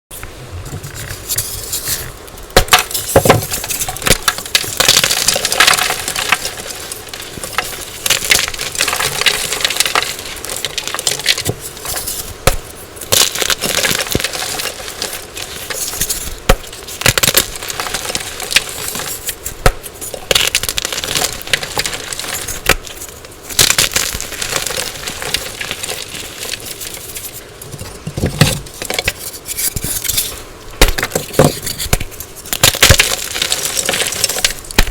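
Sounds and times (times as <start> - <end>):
chalk blocks crunching: 0.9 - 34.9.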